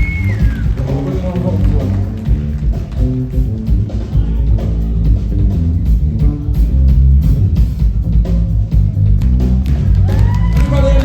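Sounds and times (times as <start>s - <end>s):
rock band playing instrumental: 0.0s - 11.0s.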